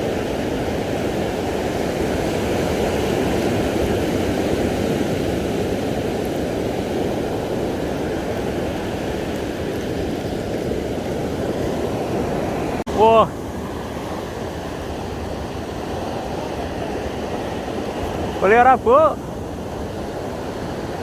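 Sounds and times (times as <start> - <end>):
ocean surf roar: 0.0 - 21.0.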